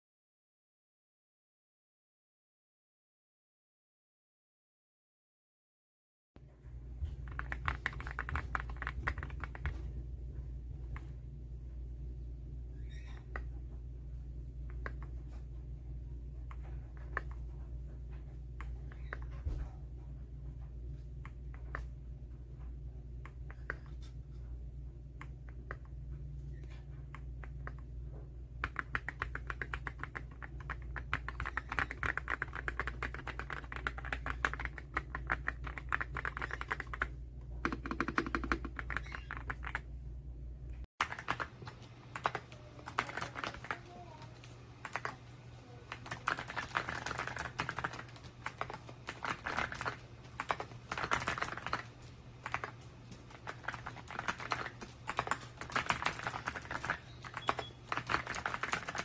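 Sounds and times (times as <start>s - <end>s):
steady low hum: 6.4s - 59.0s
mechanical keyboard typing: 7.2s - 9.8s, 28.6s - 39.8s, 41.0s - 45.3s, 45.9s - 59.0s.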